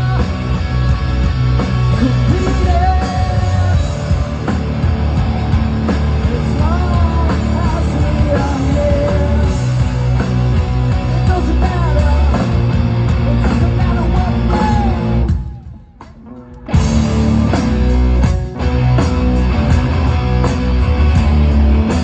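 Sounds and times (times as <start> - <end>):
rock band playing live: 0.0 - 22.0
person singing: 2.0 - 4.2, 13.2 - 16.7.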